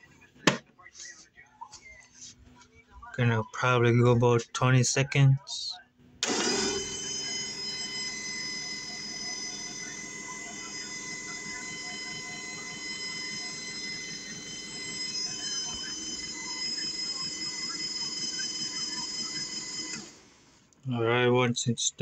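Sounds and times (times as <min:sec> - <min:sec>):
disc repair machine whining: 0:06.2 - 0:20.8.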